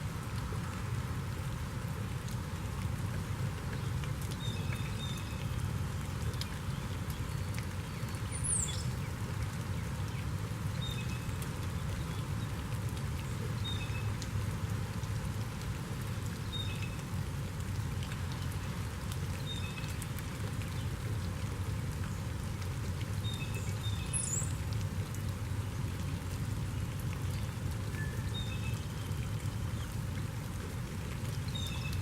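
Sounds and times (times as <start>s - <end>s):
steady rain falling: 0.0s - 32.0s.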